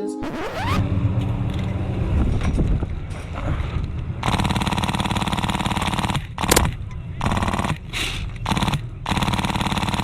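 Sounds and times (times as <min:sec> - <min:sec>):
wind rumbling on microphone: 0:00.9 - 0:04.3
full-auto gun burst: 0:07.2 - 0:07.8, 0:08.5 - 0:10.0.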